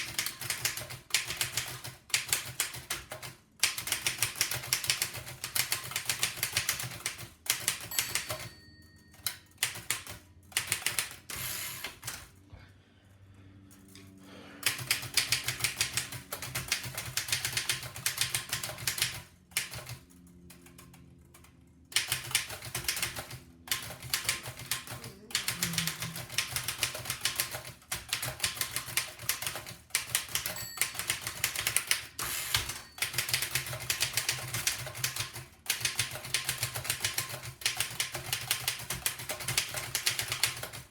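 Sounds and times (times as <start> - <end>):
typewriter keys clacking: 0.0 - 8.5, 9.1 - 12.3, 14.6 - 21.0, 21.9 - 40.9.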